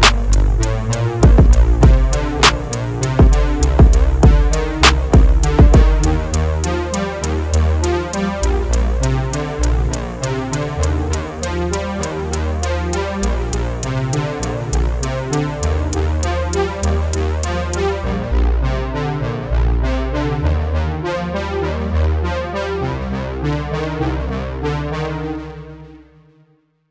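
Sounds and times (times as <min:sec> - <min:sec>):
electronic music: 0:00.0 - 0:18.7.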